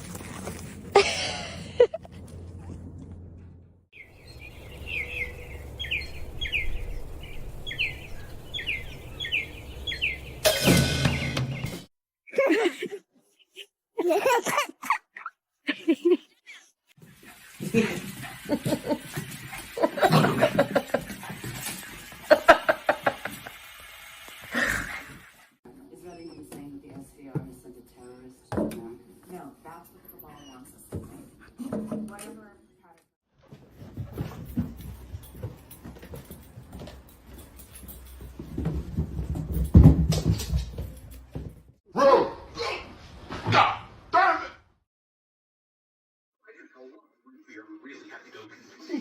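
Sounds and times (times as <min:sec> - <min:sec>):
person laughing: 0:01.0 - 0:02.1, 0:12.3 - 0:16.7, 0:22.3 - 0:23.5.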